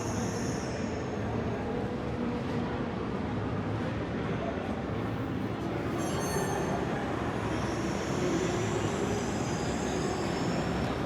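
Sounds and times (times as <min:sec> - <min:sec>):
tram wheels squealing: 0:00.0 - 0:01.5, 0:05.8 - 0:11.0.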